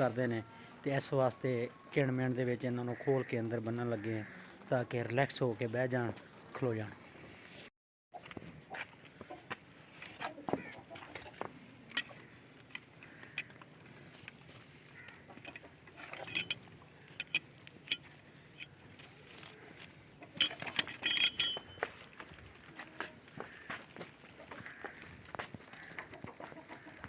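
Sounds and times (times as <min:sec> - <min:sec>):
metal rattling: 0:15.4 - 0:18.7, 0:20.3 - 0:21.9
metallic clinks and jangles: 0:15.4 - 0:18.7, 0:20.4 - 0:21.9.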